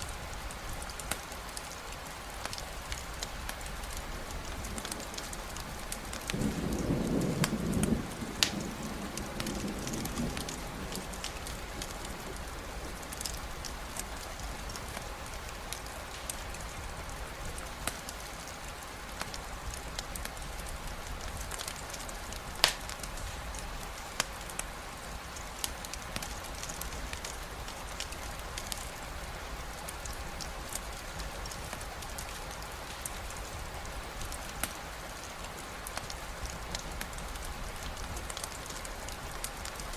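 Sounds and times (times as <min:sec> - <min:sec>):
campfire crackling and popping: 0:00.0 - 0:39.9
steady rain: 0:00.0 - 0:39.9
low thunder rumble: 0:04.2 - 0:14.9.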